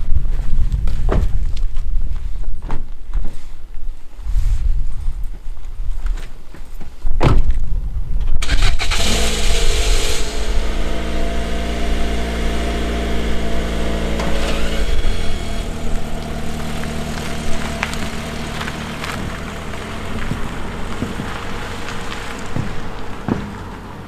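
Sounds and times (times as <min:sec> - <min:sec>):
vehicle engine starting and running: 0:08.4 - 0:24.0.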